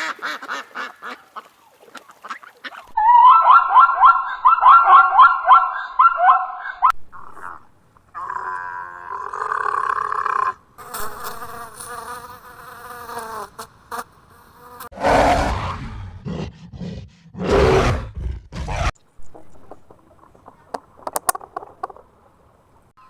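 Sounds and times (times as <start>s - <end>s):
large animal rough calls: 7.0s - 11.6s, 14.9s - 22.1s
animal grunting: 7.1s - 11.2s, 15.0s - 21.1s
flying insects buzzing: 7.1s - 15.0s.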